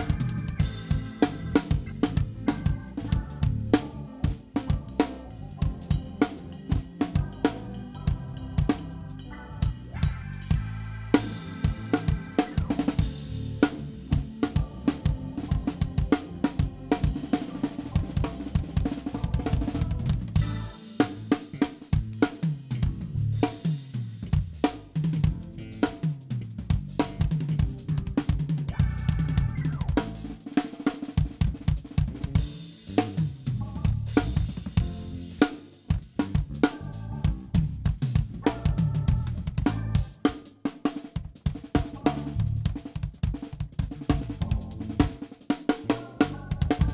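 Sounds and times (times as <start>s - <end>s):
bass guitar line: 0.0s - 30.6s, 31.2s - 40.3s, 41.2s - 46.9s
drum kit playing: 0.0s - 46.9s.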